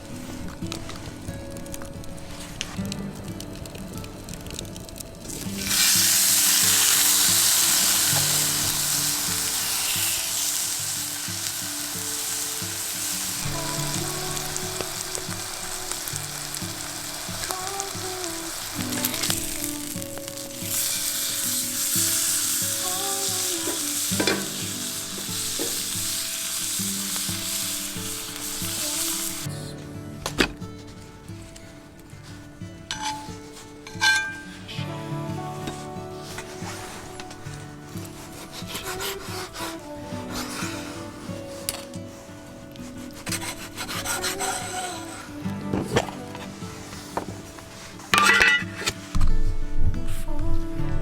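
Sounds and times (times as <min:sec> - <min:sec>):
food sizzling in a frying pan: 0:00.0 - 0:29.5, 0:43.1 - 0:45.3, 0:47.7 - 0:48.9.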